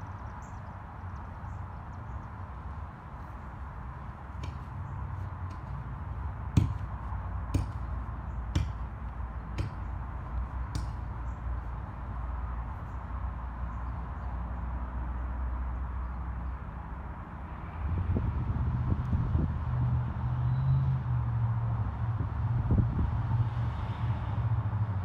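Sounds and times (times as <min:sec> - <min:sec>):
digging tool striking hard soil: 0:04.3 - 0:11.3.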